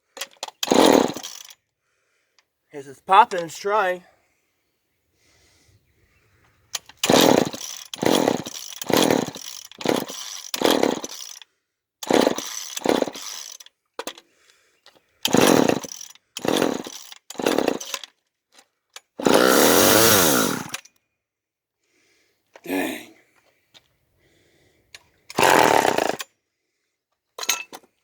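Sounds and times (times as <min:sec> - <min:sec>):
chainsaw engine sputtering: 0:00.2 - 0:01.6, 0:06.8 - 0:14.2, 0:15.2 - 0:18.2, 0:19.0 - 0:20.9, 0:25.3 - 0:26.3
chainsaw engine revving: 0:00.5 - 0:01.6, 0:06.8 - 0:11.4, 0:12.0 - 0:13.6, 0:15.2 - 0:18.0, 0:19.2 - 0:20.8, 0:25.3 - 0:26.3.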